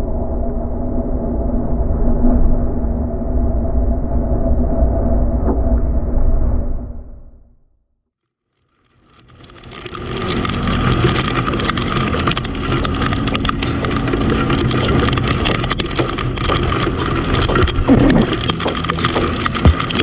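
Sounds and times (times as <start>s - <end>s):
small clicks: 8.6s - 20.0s
rushing noise: 9.8s - 20.0s.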